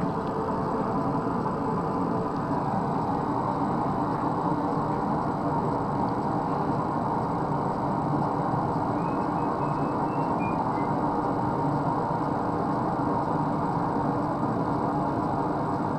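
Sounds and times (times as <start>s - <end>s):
forge running steadily: 0.0s - 15.9s.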